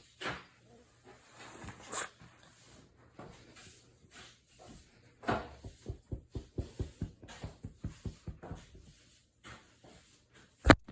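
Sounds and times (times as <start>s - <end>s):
puppy sneezing: 1.6s - 2.2s.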